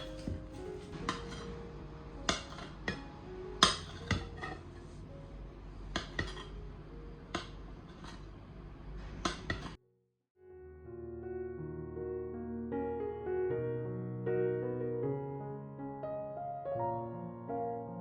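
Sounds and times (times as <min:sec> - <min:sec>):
dishes and utensils clinking: 0:00.0 - 0:01.6, 0:02.3 - 0:03.0, 0:03.6 - 0:04.9, 0:05.9 - 0:06.6, 0:07.3 - 0:08.4, 0:09.1 - 0:09.8.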